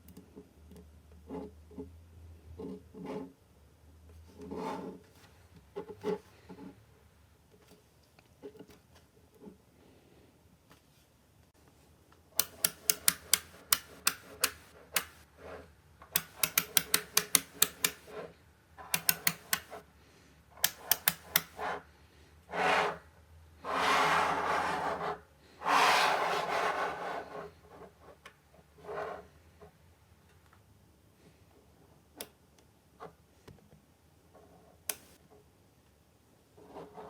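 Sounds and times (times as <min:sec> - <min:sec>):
magnetic balls snapping together: 0:12.4 - 0:15.2, 0:16.1 - 0:18.1, 0:18.8 - 0:19.8, 0:20.6 - 0:21.6, 0:34.9 - 0:35.2.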